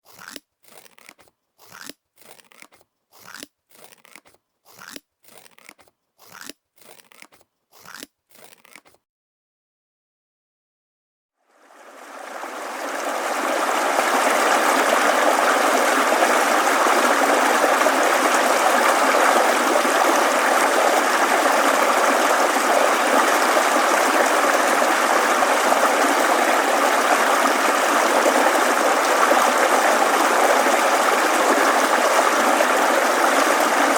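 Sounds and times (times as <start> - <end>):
scissors snipping paper: 0.0 - 9.0
babbling stream: 11.5 - 33.9.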